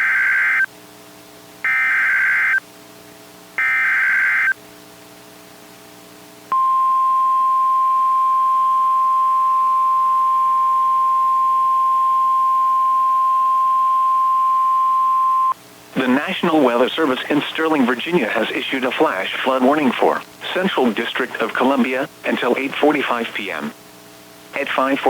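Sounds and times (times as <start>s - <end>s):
steady warning alarm tone: 0.0s - 0.7s, 1.7s - 2.6s, 3.6s - 4.6s.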